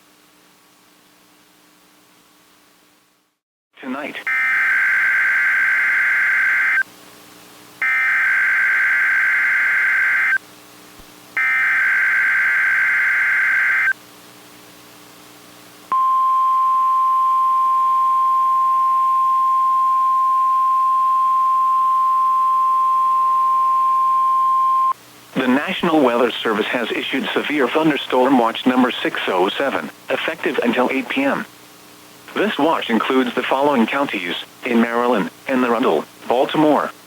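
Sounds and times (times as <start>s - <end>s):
steady warning alarm tone: 4.3s - 6.8s, 7.8s - 10.4s, 11.4s - 13.9s.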